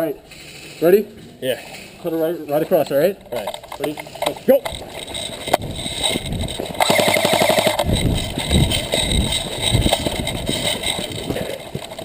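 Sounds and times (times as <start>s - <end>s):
running footsteps: 1.1s - 12.0s
gear thumping and rustling: 2.6s - 12.0s
airsoft rifle automatic fire: 6.8s - 8.8s.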